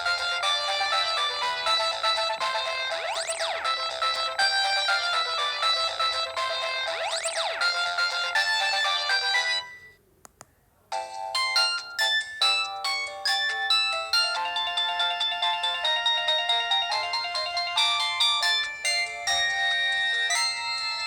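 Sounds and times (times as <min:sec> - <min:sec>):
mobile phone ringtone: 0:00.0 - 0:10.0, 0:11.0 - 0:21.0.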